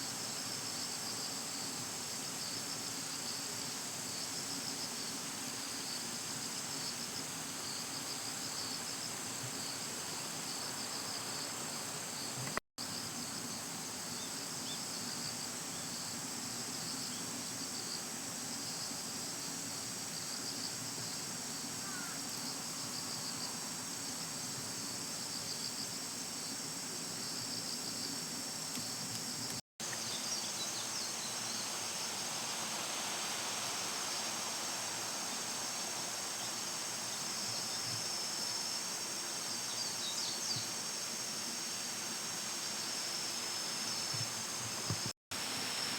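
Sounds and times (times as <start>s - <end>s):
insects calling: 18.6s - 45.9s.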